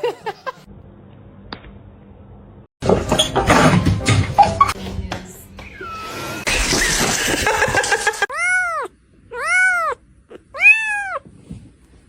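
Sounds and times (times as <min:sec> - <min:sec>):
cat meowing: 0:08.3 - 0:11.3.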